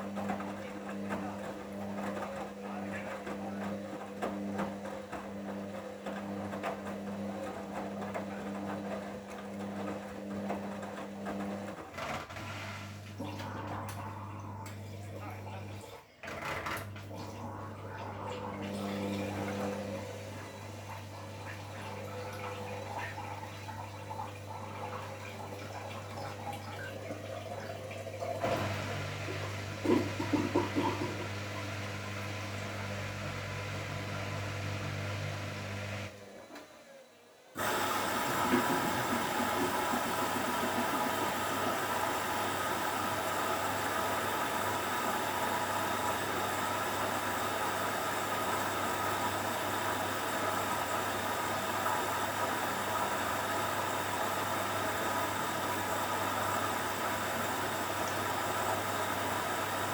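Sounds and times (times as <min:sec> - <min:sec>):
washing machine motor humming: 0:00.0 - 0:59.9
water rushing in: 0:37.6 - 0:59.9.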